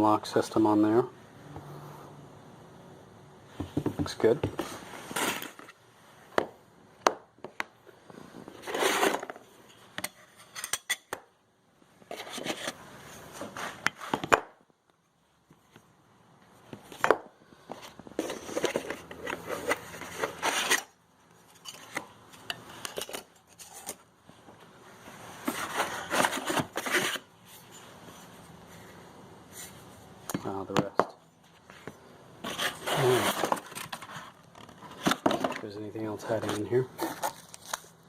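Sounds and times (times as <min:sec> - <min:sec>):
packaging rustling and scraping: 0:04.2 - 0:05.8, 0:08.1 - 0:10.7, 0:12.0 - 0:14.3, 0:17.6 - 0:24.1, 0:25.0 - 0:28.8, 0:31.4 - 0:38.0.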